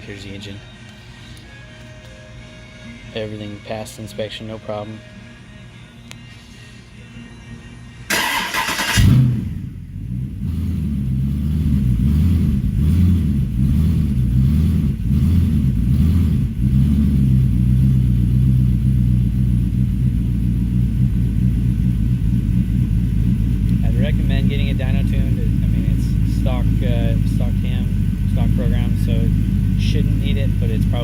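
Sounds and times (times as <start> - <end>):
engine starter cranking: 8.1 - 9.5
engine revving and idling: 8.1 - 31.0.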